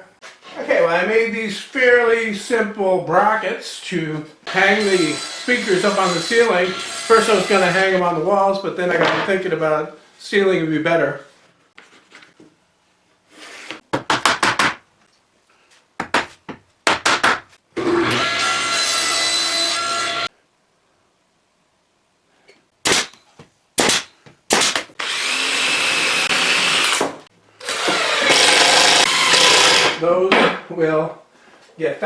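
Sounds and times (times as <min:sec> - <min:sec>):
power tool running: 0:04.7 - 0:07.8, 0:25.0 - 0:30.0.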